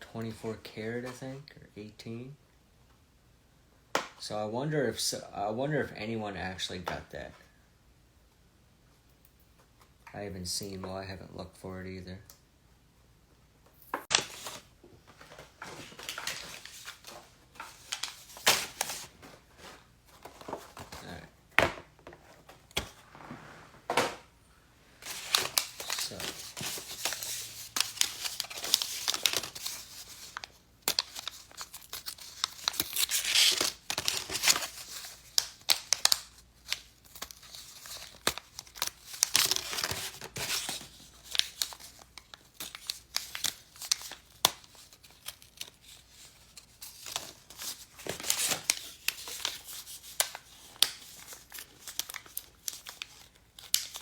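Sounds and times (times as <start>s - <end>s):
plastic packaging crinkling and tearing: 14.0s - 21.2s, 25.0s - 54.0s.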